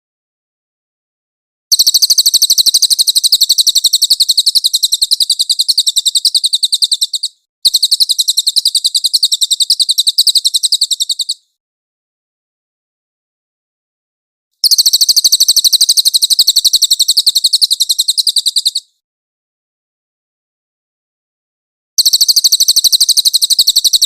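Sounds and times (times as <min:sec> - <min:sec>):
bird trilling: 0:01.7 - 0:11.5, 0:14.6 - 0:18.9, 0:22.0 - 0:24.0.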